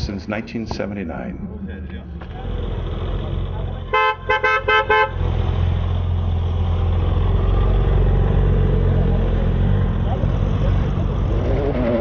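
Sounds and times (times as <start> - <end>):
car horn toots: 3.9 - 5.2.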